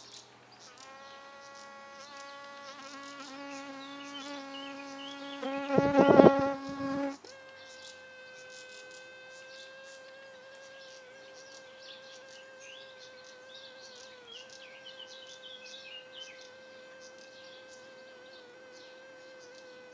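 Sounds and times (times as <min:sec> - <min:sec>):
steady buzzing hum: 0:05.4 - 0:07.2.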